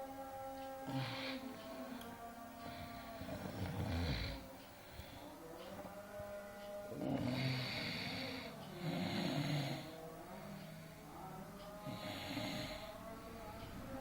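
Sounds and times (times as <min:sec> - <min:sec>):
person snoring: 0:00.9 - 0:02.0, 0:02.6 - 0:05.3, 0:06.9 - 0:10.9, 0:11.8 - 0:13.1.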